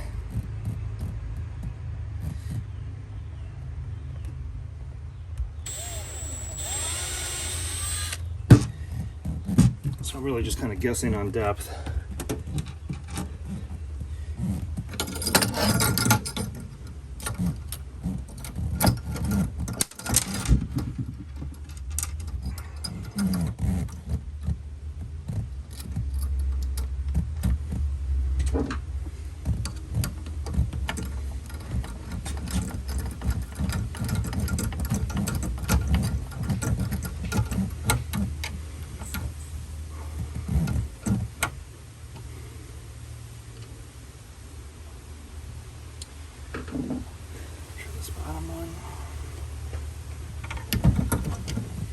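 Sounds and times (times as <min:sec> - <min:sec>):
cordless drill running: 0:05.7 - 0:08.3
parts and tools clicking and rattling: 0:05.7 - 0:10.2, 0:11.7 - 0:42.3, 0:50.4 - 0:51.9.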